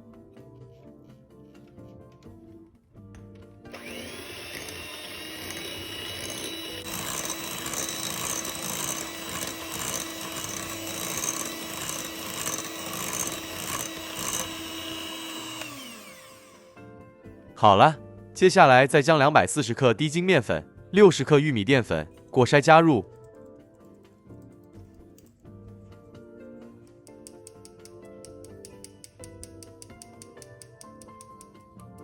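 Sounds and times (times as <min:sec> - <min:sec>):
electric mixer whirring: 0:03.7 - 0:16.8.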